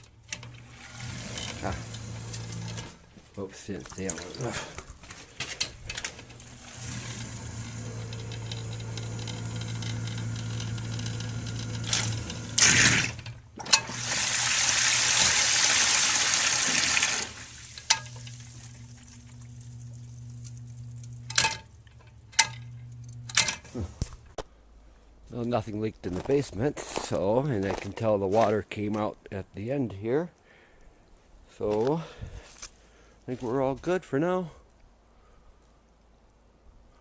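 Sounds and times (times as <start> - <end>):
pump clunks: 0.0 - 3.1, 3.8 - 24.1
sump pump humming: 0.0 - 24.4.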